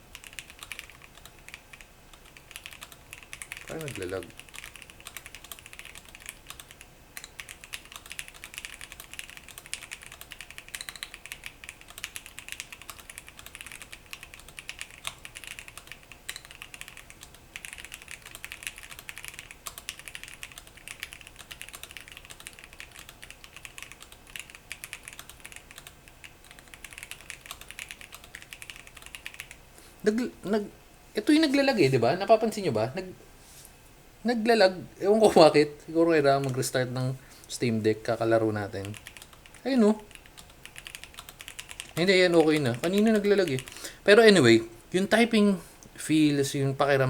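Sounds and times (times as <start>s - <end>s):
mechanical keyboard typing: 0.1s - 29.6s, 36.4s - 36.8s, 38.6s - 43.8s.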